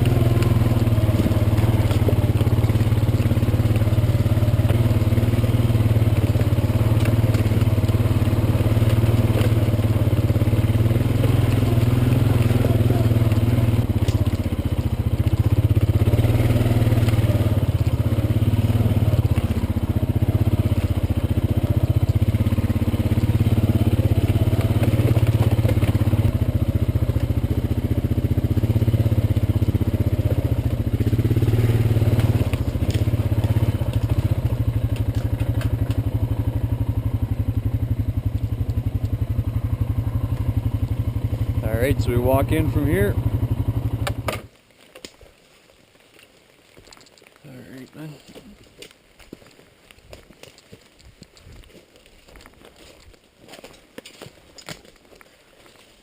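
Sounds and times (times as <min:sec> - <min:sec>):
vehicle engine running: 0:00.0 - 0:44.5.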